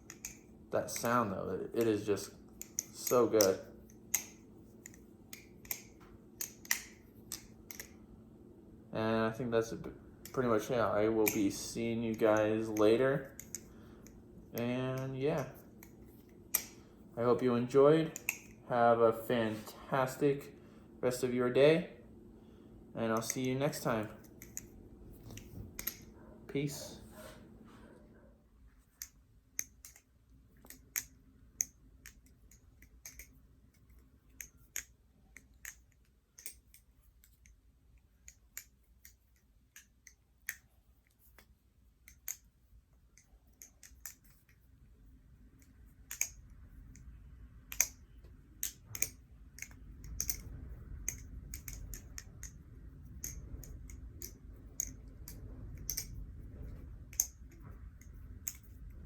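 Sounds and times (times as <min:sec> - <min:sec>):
butterfly knife clacking: 0:11.2 - 0:16.8, 0:18.2 - 0:18.6, 0:45.6 - 0:47.1, 0:47.7 - 0:59.0.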